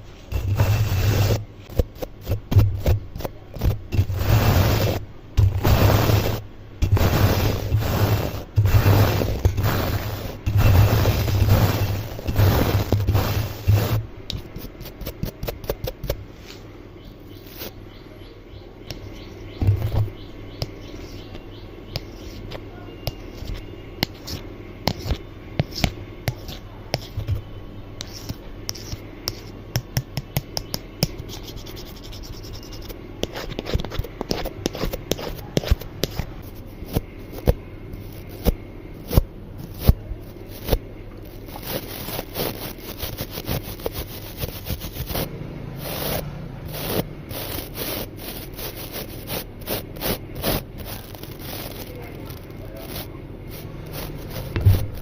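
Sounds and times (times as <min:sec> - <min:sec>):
scraping and scratching: 0:00.0 - 0:16.7, 0:17.4 - 0:17.8, 0:19.6 - 0:55.0
sharp taps and clicks: 0:29.3 - 0:31.2.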